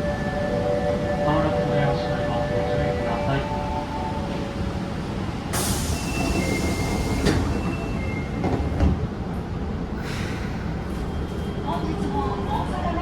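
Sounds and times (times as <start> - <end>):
subway train rumble: 0.0 - 13.0.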